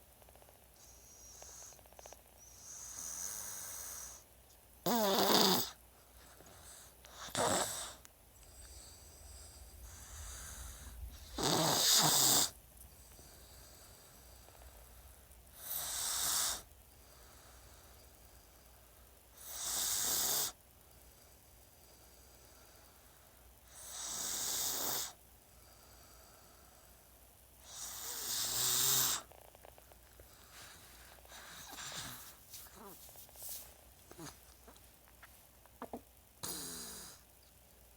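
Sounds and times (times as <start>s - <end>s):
loud snoring: 4.8s - 5.8s, 7.2s - 8.0s, 11.2s - 12.6s, 19.4s - 20.6s, 23.8s - 25.2s, 27.7s - 29.3s, 36.4s - 37.2s.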